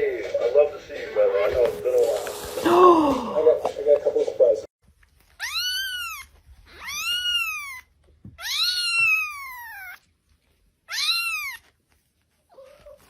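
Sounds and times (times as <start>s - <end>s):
cat meowing: 5.3s - 10.0s, 10.9s - 11.7s.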